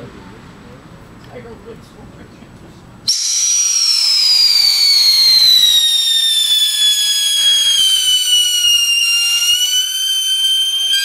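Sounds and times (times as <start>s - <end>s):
firework hiss: 3.1s - 11.0s
firework shrieking whistle: 3.1s - 11.0s.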